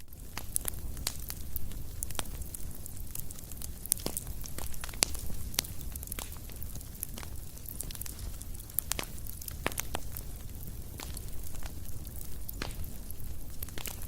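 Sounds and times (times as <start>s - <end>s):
fire crackling and popping: 0.0s - 14.0s.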